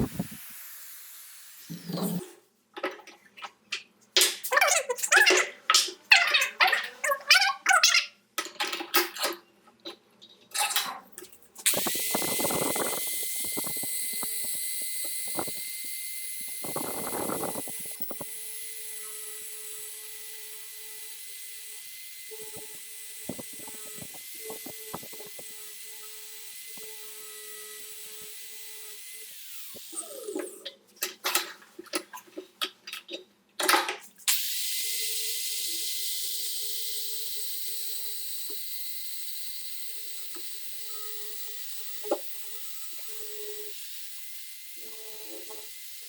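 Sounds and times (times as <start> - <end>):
power tool whining: 0.0 - 2.3, 11.7 - 30.6, 34.3 - 46.0.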